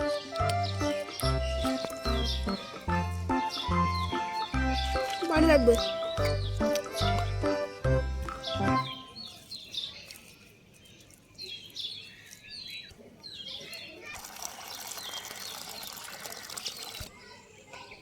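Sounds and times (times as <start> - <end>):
small birds chirping: 0.0 - 18.0.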